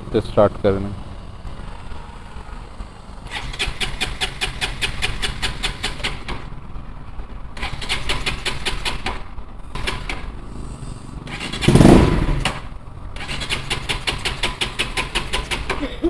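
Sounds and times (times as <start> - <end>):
loud engine burst: 3.2 - 6.3, 9.7 - 15.7
motorcycle engine cranking: 3.2 - 6.4, 7.6 - 10.4, 11.2 - 15.8.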